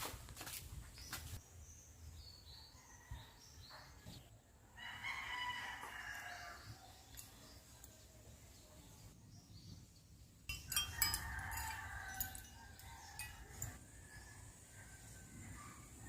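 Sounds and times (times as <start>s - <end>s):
faint rooster crow: 2.4s - 4.1s, 4.7s - 7.0s, 10.8s - 16.0s.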